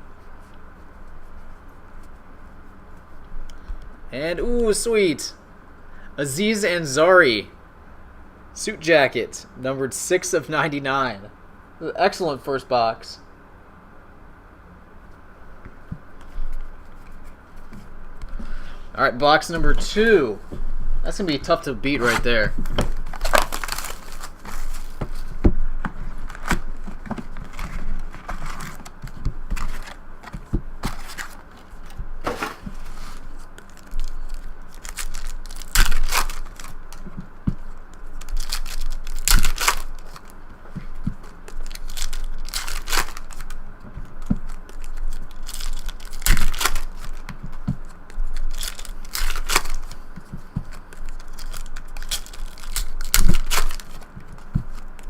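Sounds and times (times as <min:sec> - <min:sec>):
cards being handled: 0:16.0 - 0:18.6, 0:19.4 - 0:55.0
wrappers crinkling: 0:21.1 - 0:25.4, 0:26.0 - 0:55.0
card packs tearing open: 0:21.8 - 0:25.3, 0:26.1 - 0:37.0, 0:37.7 - 0:40.3, 0:41.2 - 0:43.6, 0:44.2 - 0:47.3, 0:48.2 - 0:50.0, 0:50.7 - 0:55.0.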